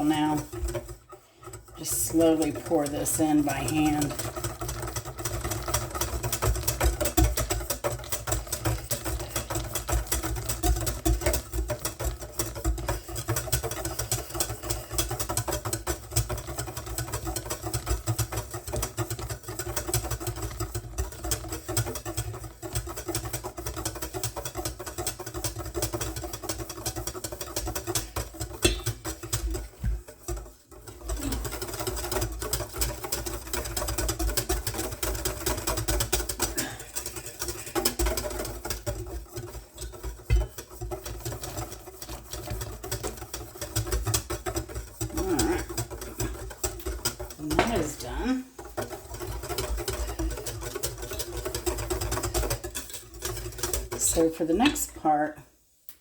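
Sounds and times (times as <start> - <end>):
mixer beaters clicking: 0.0 - 55.3.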